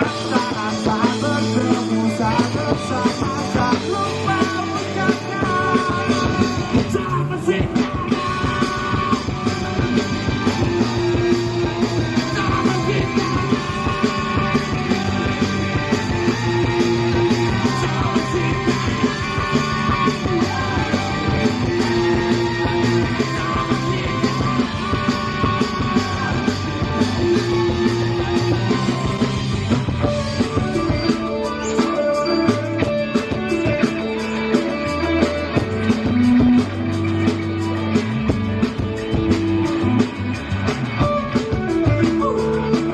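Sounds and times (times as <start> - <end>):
person singing: 0.0 - 35.9, 41.0 - 42.9
punk rock band playing: 0.0 - 42.9.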